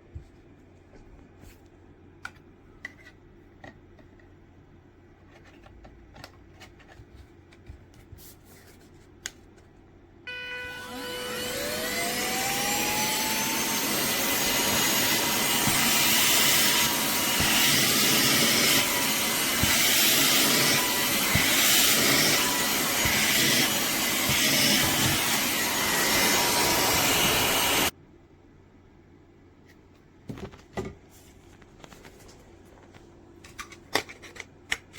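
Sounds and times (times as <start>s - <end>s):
handheld vacuum motor running: 10.3s - 27.9s.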